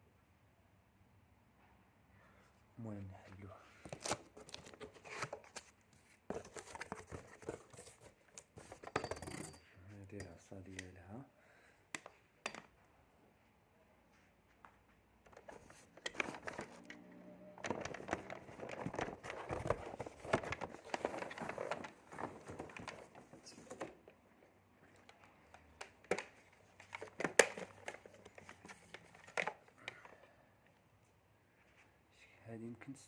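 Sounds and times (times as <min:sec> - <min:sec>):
packaging crinkling and rustling: 0:03.8 - 0:08.8, 0:15.3 - 0:24.0.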